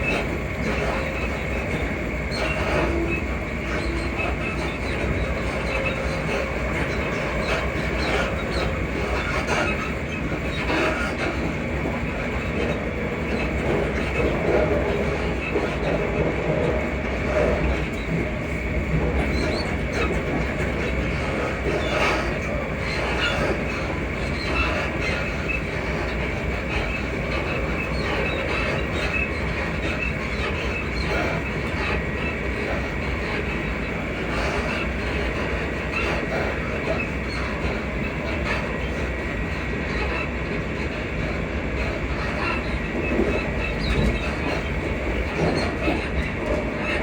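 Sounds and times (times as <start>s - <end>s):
rail joint clicks: 0.0s - 47.0s
train wheels rumbling on track: 0.0s - 47.0s.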